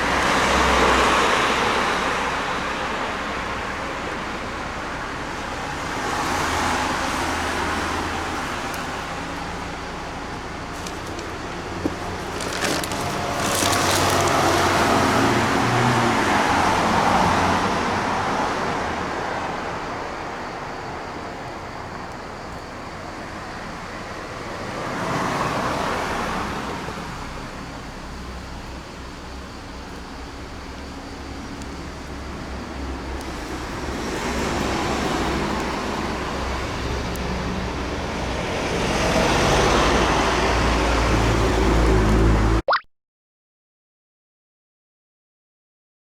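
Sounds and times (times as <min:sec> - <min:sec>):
road noise hum: 0:00.0 - 0:42.6
vehicle passing: 0:10.8 - 0:19.0.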